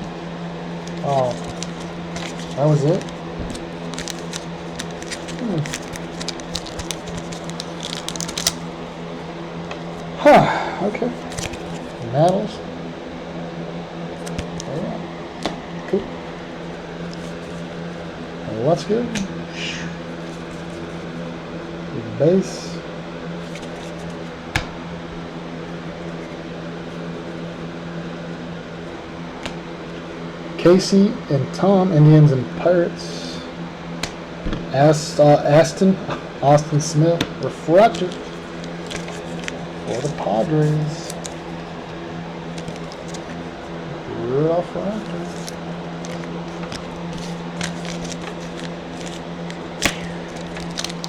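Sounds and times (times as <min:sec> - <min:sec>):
low electrical hum: 0:00.0 - 0:51.0
cards clicking and rustling: 0:00.7 - 0:10.2, 0:11.0 - 0:12.6, 0:14.1 - 0:18.0, 0:20.1 - 0:21.2, 0:23.4 - 0:25.2, 0:29.4 - 0:29.8, 0:34.0 - 0:43.8, 0:44.8 - 0:51.0.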